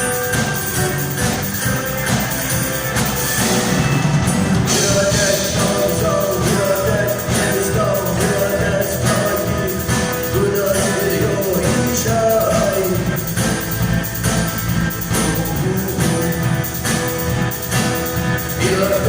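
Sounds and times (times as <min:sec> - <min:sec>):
rock band with guitar and drums: 0:00.0 - 0:19.0
man singing: 0:04.7 - 0:13.8, 0:14.9 - 0:17.2, 0:18.4 - 0:19.0.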